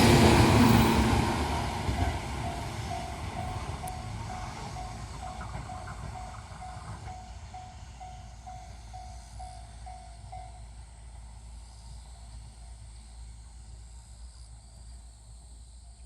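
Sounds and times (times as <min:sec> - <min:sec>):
level-crossing warning bell: 0:00.0 - 0:10.9
train rumbling: 0:00.0 - 0:15.8.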